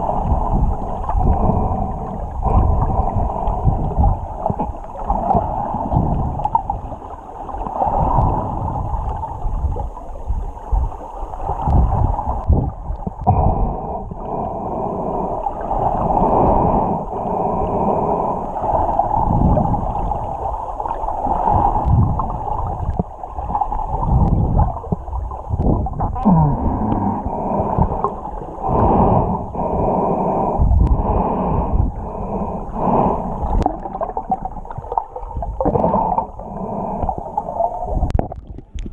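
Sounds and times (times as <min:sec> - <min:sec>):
breathing through a snorkel: 0:00.0 - 0:06.6, 0:13.2 - 0:20.4, 0:26.1 - 0:33.9, 0:35.7 - 0:38.1
underwater gurgling and sloshing: 0:00.0 - 0:38.9.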